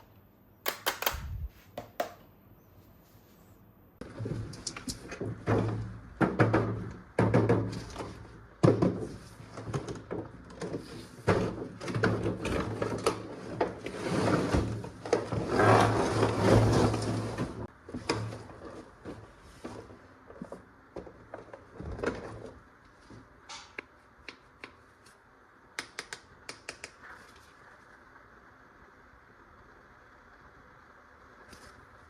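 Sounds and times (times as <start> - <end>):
plastic clicks and clatter: 0.6 - 2.2.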